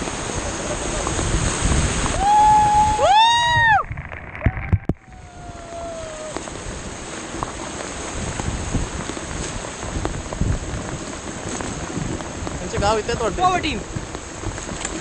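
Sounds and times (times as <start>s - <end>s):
rushing river water: 0.0s - 15.0s
people whooping: 2.1s - 6.4s.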